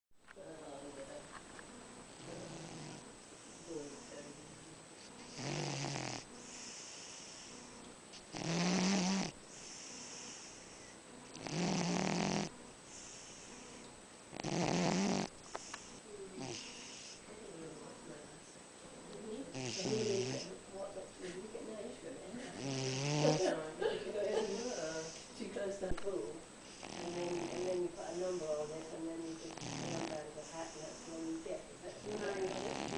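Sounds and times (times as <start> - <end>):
cat snoring: 2.2 - 3.0, 5.2 - 7.6, 8.3 - 17.2, 19.5 - 20.5, 22.5 - 23.5, 26.6 - 31.4, 32.0 - 32.9
airy breaths: 6.3 - 7.8, 9.4 - 11.1, 12.8 - 13.9, 15.4 - 17.4, 28.0 - 29.6, 30.4 - 31.6.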